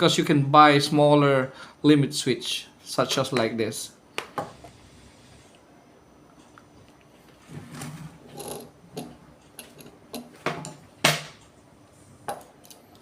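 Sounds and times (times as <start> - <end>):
tools scraping on hard surface: 7.4 - 10.6
tools knocking and clicking: 8.4 - 11.4.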